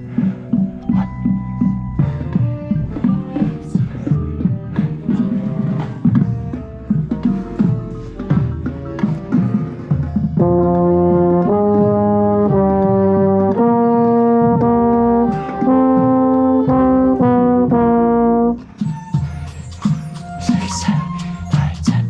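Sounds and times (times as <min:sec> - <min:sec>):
drum taps: 0:00.2 - 0:18.3
brass band playing held chords: 0:10.4 - 0:18.6.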